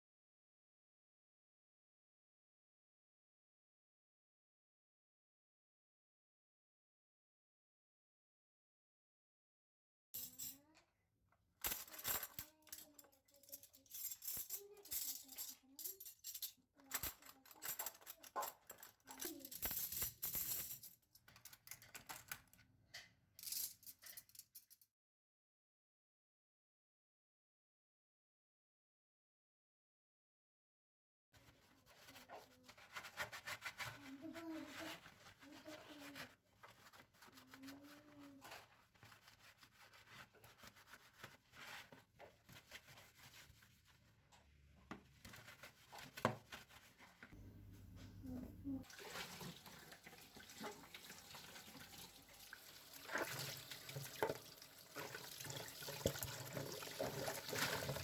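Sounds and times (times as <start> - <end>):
kitchen items clinking and clattering: 10.2 - 10.8, 11.6 - 22.6, 23.4 - 24.8, 45.0 - 58.0.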